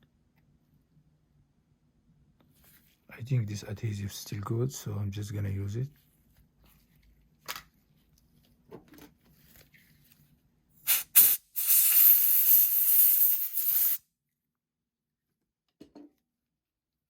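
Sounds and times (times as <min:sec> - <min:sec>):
spray hissing: 0:10.9 - 0:14.0.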